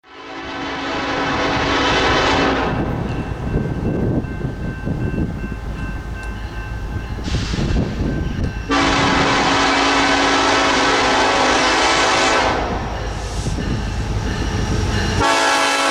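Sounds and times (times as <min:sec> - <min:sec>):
locomotive air horn blasts: 0:00.0 - 0:02.9, 0:08.7 - 0:12.9, 0:15.2 - 0:15.9
train rumble: 0:00.1 - 0:15.9.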